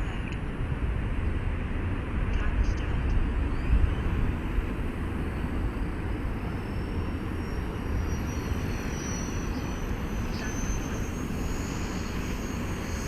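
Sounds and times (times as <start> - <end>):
model helicopter rotor whine: 3.1 - 13.0.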